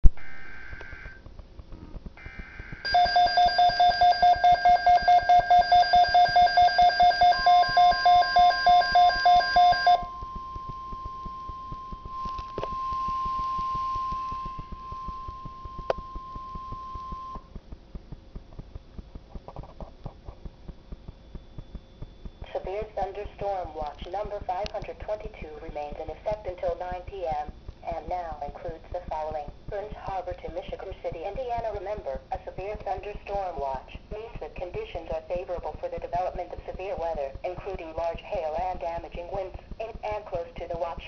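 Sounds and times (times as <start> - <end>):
faint radio hiss: 0.0 - 41.0
buzzy digital header: 0.1 - 3.0, 4.8 - 19.2
steady warning tone: 0.2 - 31.6
alarm beeping: 2.2 - 17.5.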